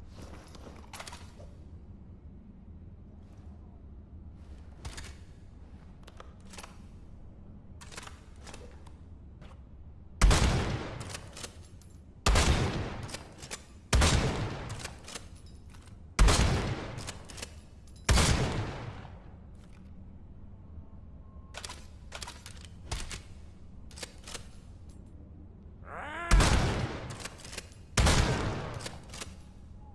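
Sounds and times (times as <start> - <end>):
rifle shots echoing: 28.0 - 29.1.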